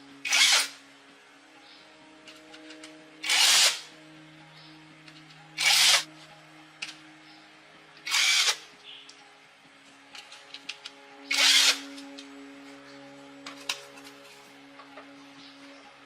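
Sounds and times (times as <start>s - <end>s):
power tool bursts: 0.2s - 0.8s, 3.2s - 3.9s, 5.6s - 6.0s, 8.1s - 8.6s, 11.3s - 11.9s.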